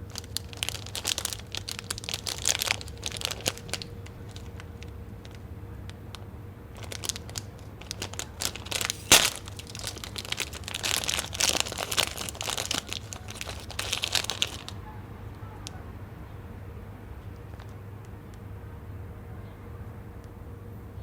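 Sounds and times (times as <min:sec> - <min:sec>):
plastic packaging crinkling: 0:00.0 - 0:14.8.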